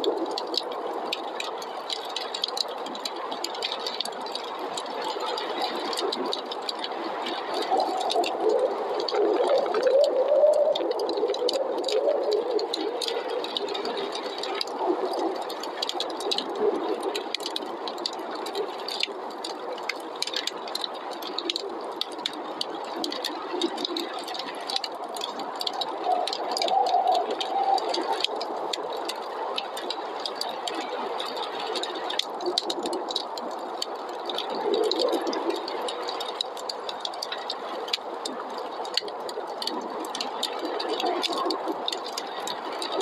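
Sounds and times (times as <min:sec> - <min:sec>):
wood fire crackling: 0:00.0 - 0:43.0
rushing wind: 0:04.1 - 0:18.5, 0:21.6 - 0:36.8.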